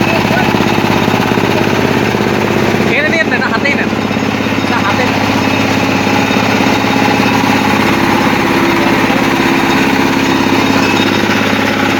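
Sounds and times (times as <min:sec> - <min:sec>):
combine harvester engine pulsing: 0:00.0 - 0:11.9.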